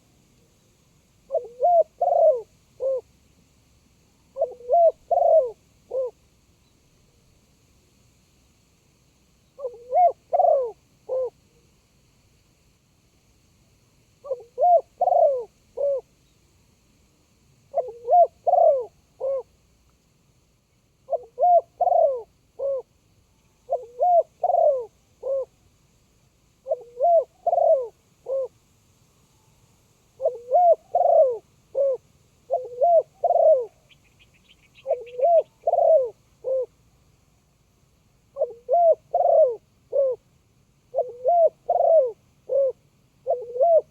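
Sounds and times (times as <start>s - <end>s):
dove cooing: 1.3s - 3.1s, 4.3s - 6.2s, 9.6s - 11.4s, 14.2s - 16.1s, 17.7s - 19.5s, 21.1s - 22.9s, 23.6s - 25.6s, 26.6s - 28.6s, 30.2s - 36.8s, 38.3s - 40.2s, 40.9s - 43.9s.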